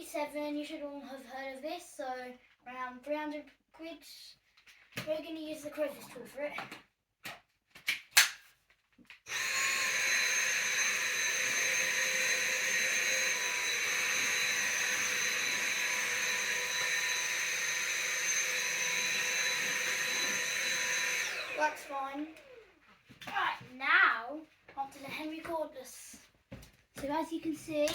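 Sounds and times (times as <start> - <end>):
cordless vacuum high whine: 9.3 - 22.8.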